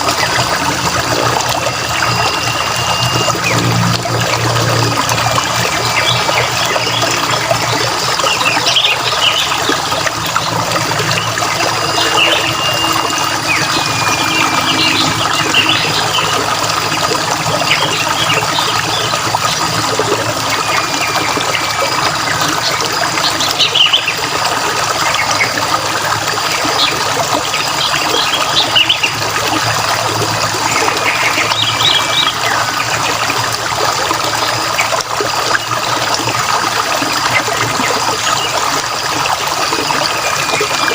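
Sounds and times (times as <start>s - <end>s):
birds chirping: 0.0s - 25.8s, 26.5s - 33.4s
trickling running water: 0.0s - 40.9s
whistled bird notes: 10.4s - 19.2s.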